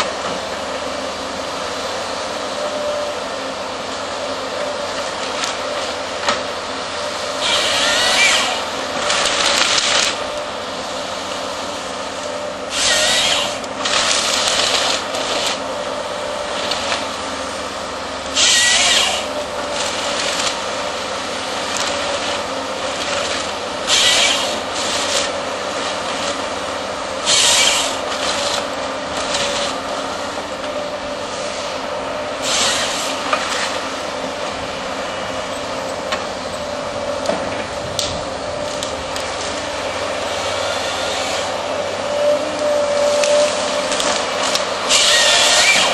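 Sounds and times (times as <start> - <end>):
machine engine and hydraulics hum: 0.0 - 45.9
chainsaw cutting through wood: 2.0 - 45.9.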